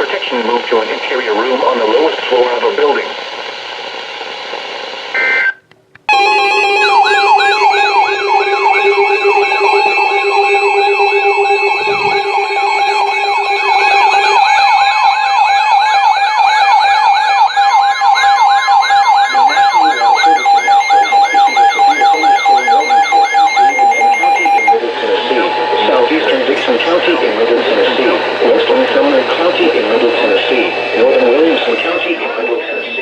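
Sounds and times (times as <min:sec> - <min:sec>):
steady alarm tones: 0:05.1 - 0:33.0
electronic siren wail: 0:05.2 - 0:33.0
pulsing beep: 0:06.1 - 0:27.4
data-like tone burst: 0:06.1 - 0:33.0.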